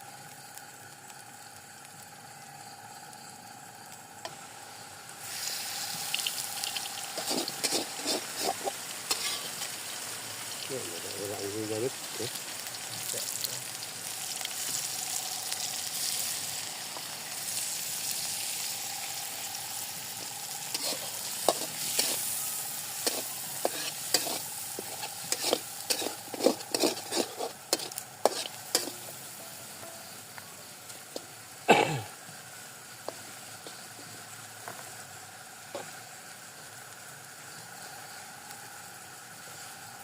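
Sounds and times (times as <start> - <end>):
food sizzling in hot oil: 0.0 - 40.0
utensil scraping a pan: 7.1 - 9.7, 20.7 - 22.3, 23.0 - 29.1.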